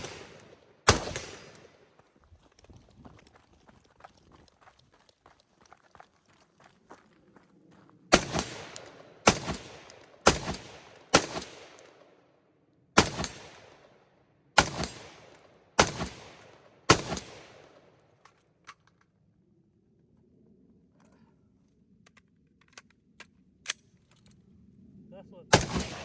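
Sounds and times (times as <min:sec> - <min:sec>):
rifle shots with echo: 0:00.0 - 0:01.9, 0:08.1 - 0:12.2, 0:13.0 - 0:14.0, 0:14.6 - 0:18.0, 0:25.5 - 0:26.0.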